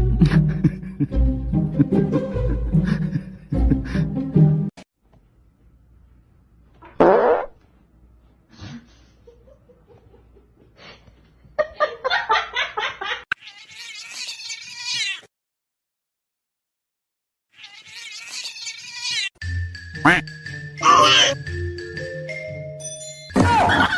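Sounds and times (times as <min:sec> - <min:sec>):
cat meowing: 0:13.3 - 0:15.3, 0:17.6 - 0:19.3, 0:20.8 - 0:21.4.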